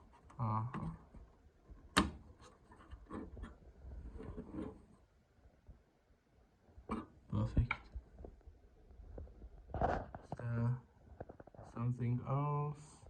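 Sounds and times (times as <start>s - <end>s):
rubbing and scraping handling: 0.0s - 5.1s.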